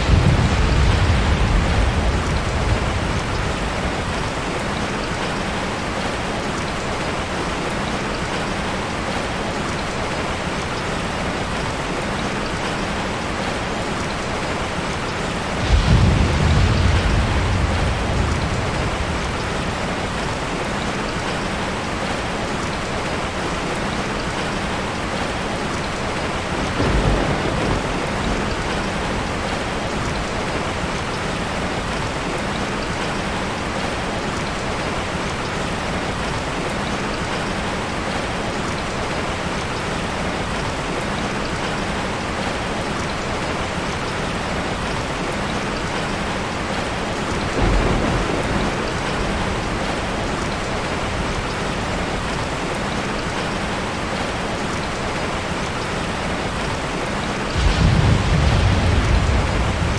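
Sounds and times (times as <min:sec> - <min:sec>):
low rumbles of thunder: 0:00.0 - 0:05.7, 0:15.3 - 0:21.4, 0:26.2 - 0:31.4, 0:47.3 - 0:52.7, 0:57.5 - 0:59.9
heavy rain falling: 0:00.0 - 0:59.9.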